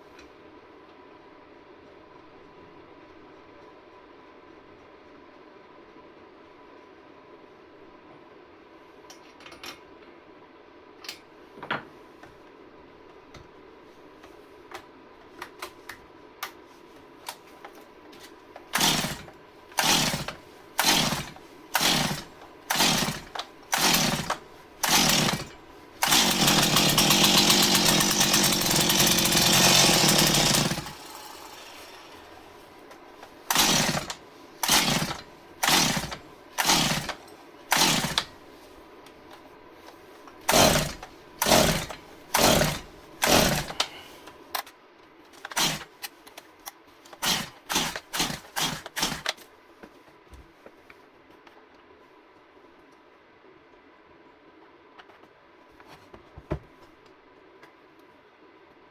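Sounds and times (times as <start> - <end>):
starter cord pulls: 18.7 - 31.6, 33.5 - 38.3, 40.5 - 43.9, 45.4 - 45.9, 47.1 - 49.4
chainsaw engine running: 18.7 - 32.3, 33.5 - 38.3, 40.5 - 44.0, 45.5 - 45.9, 47.2 - 49.3.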